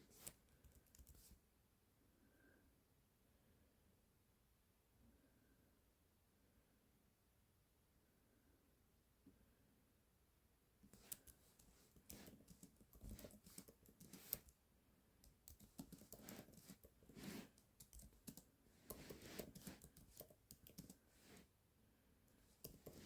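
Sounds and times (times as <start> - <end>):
typing on computer keyboard: 0.1 - 1.3, 10.9 - 14.5, 15.2 - 21.0, 22.5 - 23.0.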